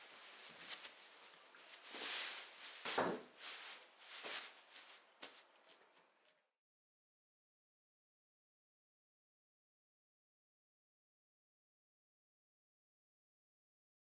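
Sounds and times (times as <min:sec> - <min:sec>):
rustling and handling noises: 0:00.0 - 0:06.5.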